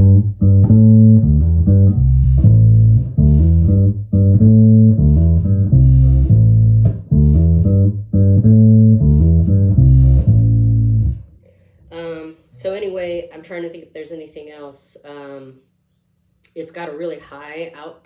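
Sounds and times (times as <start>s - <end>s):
electric bass riff: 0.0s - 11.4s.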